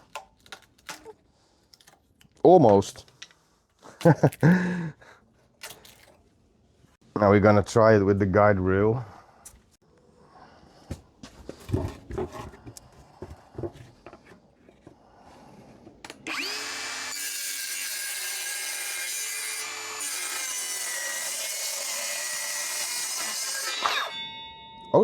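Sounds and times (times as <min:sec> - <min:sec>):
knocks and clatter of handling: 0:11.4 - 0:15.0
circular saw cutting wood: 0:16.1 - 0:24.2.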